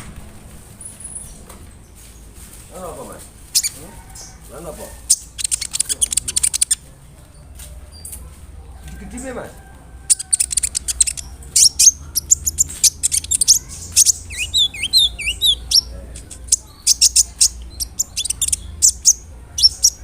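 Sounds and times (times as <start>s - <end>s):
bird singing chips and trills: 3.5s - 4.3s, 5.0s - 6.8s, 10.1s - 20.0s.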